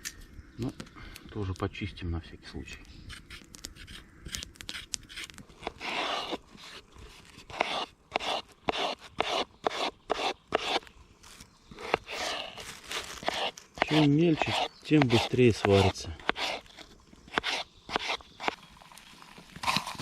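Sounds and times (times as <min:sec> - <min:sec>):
knife scraping carrot: 0:03.1 - 0:10.9, 0:11.8 - 0:18.6.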